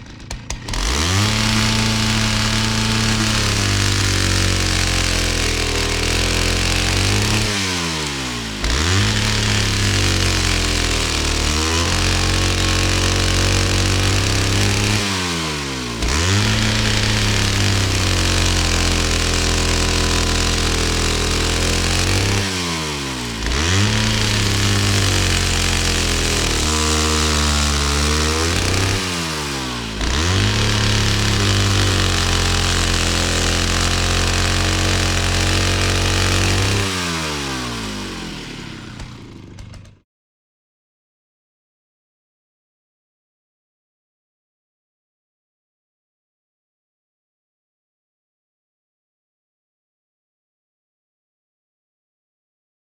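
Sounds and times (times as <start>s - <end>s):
chainsaw engine revving: 0.0s - 40.0s.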